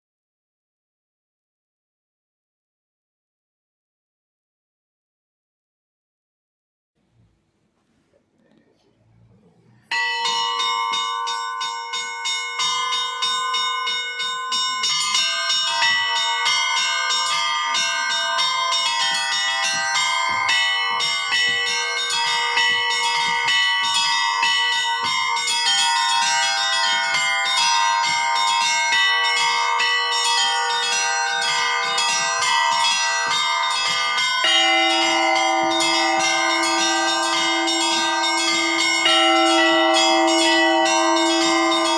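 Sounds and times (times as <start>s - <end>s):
low bell ringing: 9.7s - 41.9s
church bells rung by hand: 9.8s - 41.9s.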